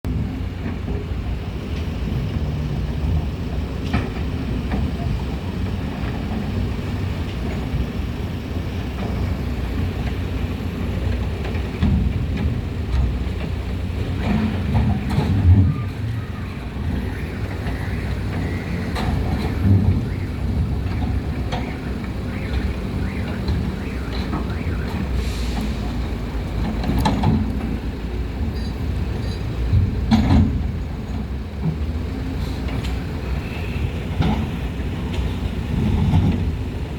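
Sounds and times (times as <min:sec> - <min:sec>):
excavator diesel engine running: 0:00.1 - 0:36.9
excavator bucket knocking and scraping: 0:08.9 - 0:36.9.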